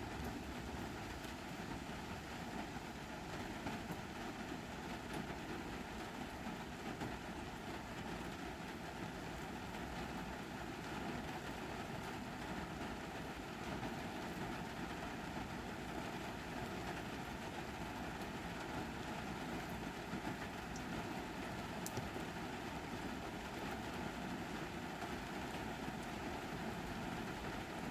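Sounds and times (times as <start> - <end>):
steady rain falling: 0.0 - 27.9.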